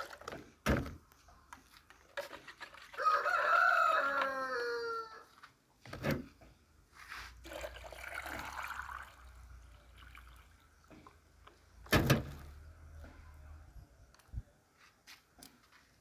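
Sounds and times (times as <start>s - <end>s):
water pouring into bottle: 7.4s - 10.9s.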